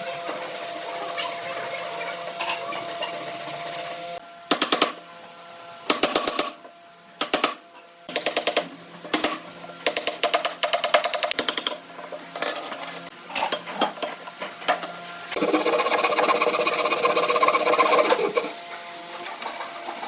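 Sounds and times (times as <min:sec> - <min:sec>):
power tool motor running: 0:15.2 - 0:20.0.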